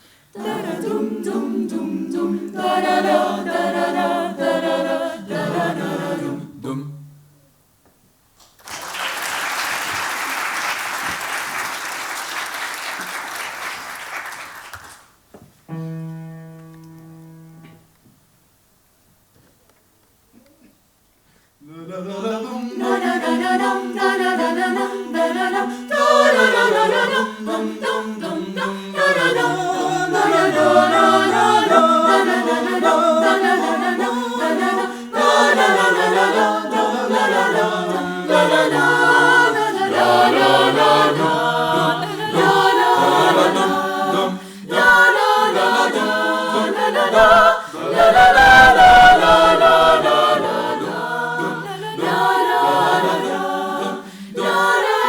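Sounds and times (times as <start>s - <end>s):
choir singing a cappella: 0.0s - 7.3s, 21.6s - 55.0s.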